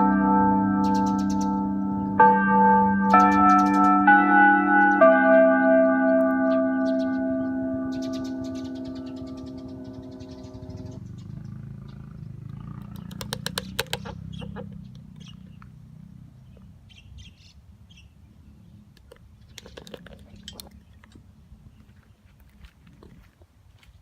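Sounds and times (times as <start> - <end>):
birds chirping: 0.0 - 24.0
public-address chime echo: 1.6 - 10.8
sharp clicks: 12.4 - 15.8.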